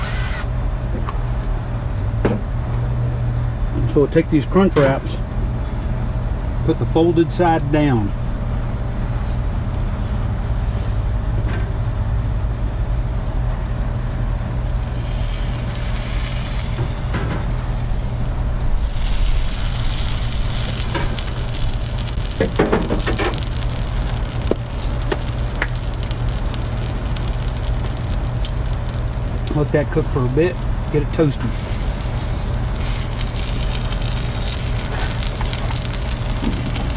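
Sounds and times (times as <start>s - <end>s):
steady low hum: 0.0s - 36.9s
food sizzling on a griddle: 14.6s - 29.4s, 31.5s - 36.9s.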